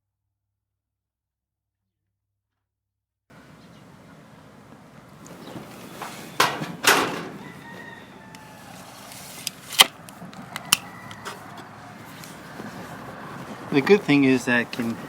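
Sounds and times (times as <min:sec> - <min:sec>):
faint crowing calls: 0:03.3 - 0:15.0
chickens squawking: 0:05.2 - 0:09.3, 0:10.2 - 0:13.8.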